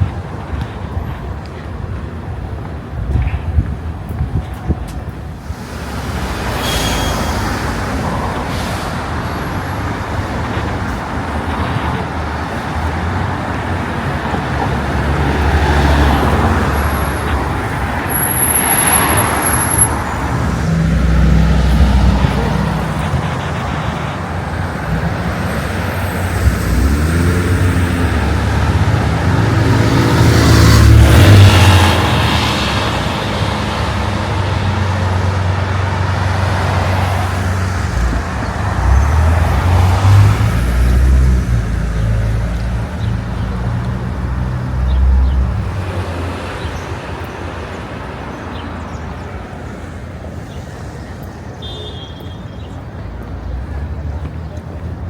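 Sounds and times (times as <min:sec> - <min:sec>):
vehicles passing in a rumble: 0:00.0 - 0:55.0
large engine pulling away: 0:24.6 - 0:34.9.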